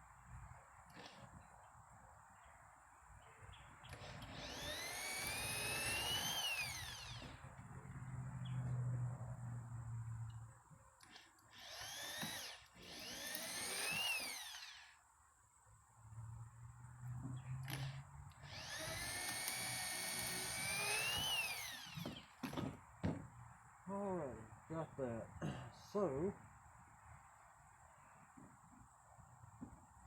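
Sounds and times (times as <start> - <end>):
electric drill boring wood: 3.9 - 7.4, 11.0 - 15.0, 17.6 - 22.7.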